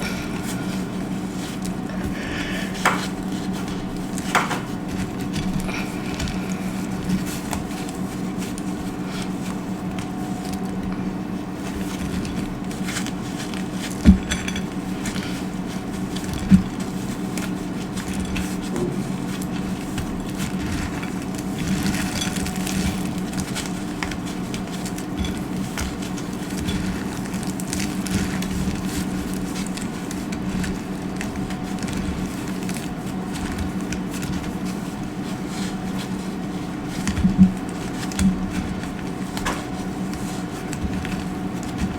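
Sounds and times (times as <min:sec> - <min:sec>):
dry soap crunching: 0:00.0 - 0:41.9.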